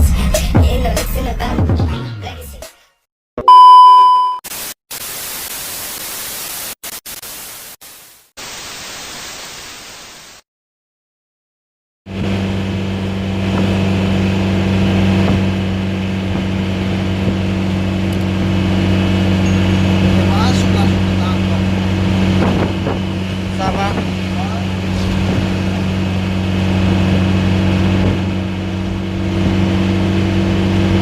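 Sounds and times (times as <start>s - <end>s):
car engine drone: 12.1s - 31.0s.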